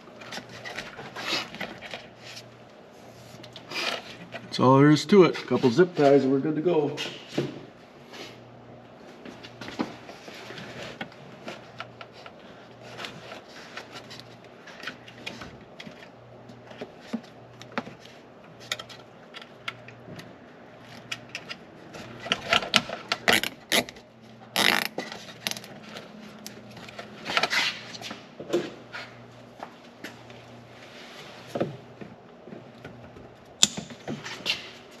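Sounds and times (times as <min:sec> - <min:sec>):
zip ties ratcheting: 0:24.6 - 0:25.6.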